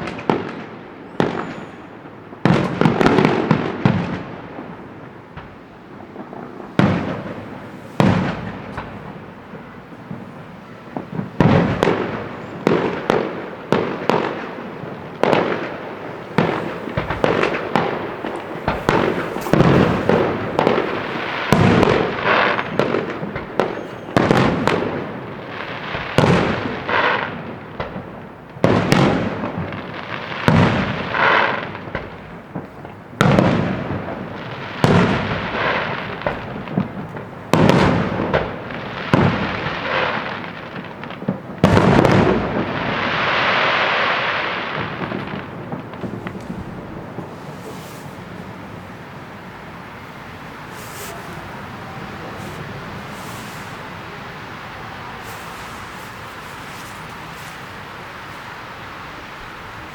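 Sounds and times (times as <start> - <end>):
firework bangs with crackling: 0.0 - 59.9.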